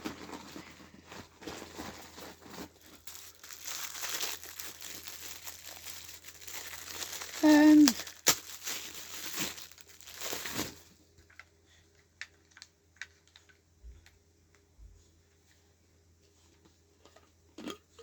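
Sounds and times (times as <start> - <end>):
packaging crinkling and tearing: 0.0 - 11.4.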